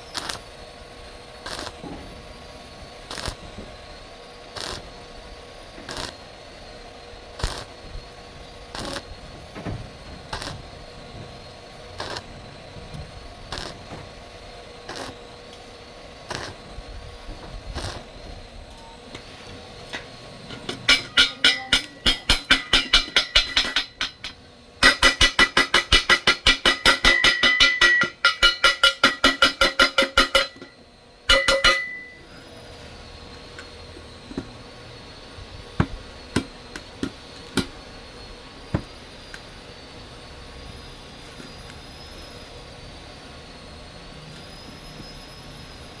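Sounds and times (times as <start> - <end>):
hammer striking steel: 20.0 - 32.2.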